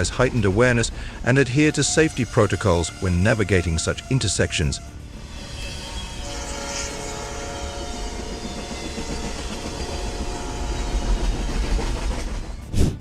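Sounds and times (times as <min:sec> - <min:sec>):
train rumbling on rails: 0:00.0 - 0:13.0.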